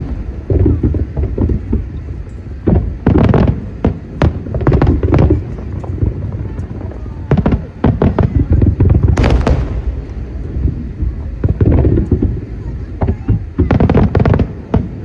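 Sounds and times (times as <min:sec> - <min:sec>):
fireworks booming: 0:00.0 - 0:15.0
low rumble: 0:09.1 - 0:13.0.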